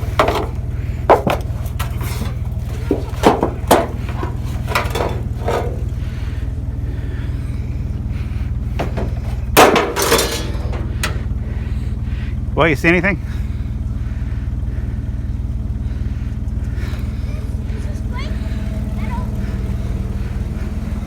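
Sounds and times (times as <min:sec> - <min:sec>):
short knocks and clatters: 0:00.0 - 0:06.3, 0:08.7 - 0:11.3
truck engine idling: 0:00.0 - 0:21.0.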